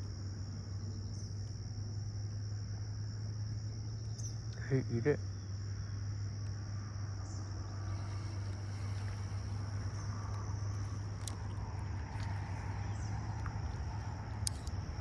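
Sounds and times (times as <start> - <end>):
insects chirping: 0.0 - 15.0
steady low hum: 0.0 - 15.0
faint ticks: 6.4 - 6.6, 7.4 - 15.0.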